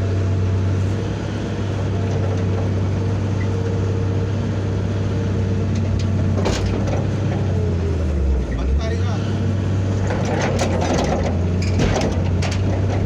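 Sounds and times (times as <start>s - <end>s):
excavator diesel engine running: 0.0s - 13.0s.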